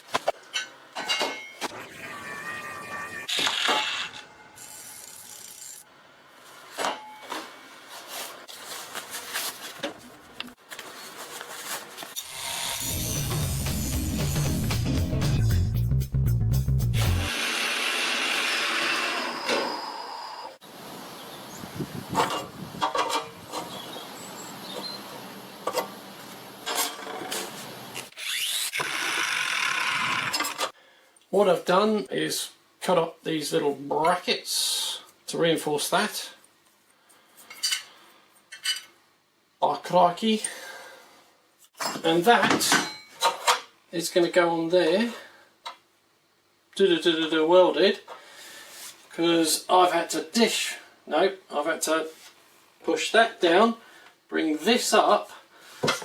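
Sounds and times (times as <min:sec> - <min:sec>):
metal tools clinking on workbench: 0:00.6 - 0:01.7, 0:41.8 - 0:43.6.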